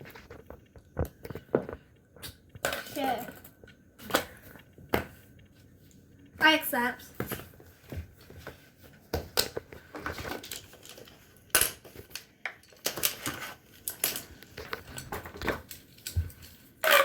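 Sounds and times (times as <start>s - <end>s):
plastic toys clicking and rattling: 0.1s - 4.8s, 9.3s - 17.0s.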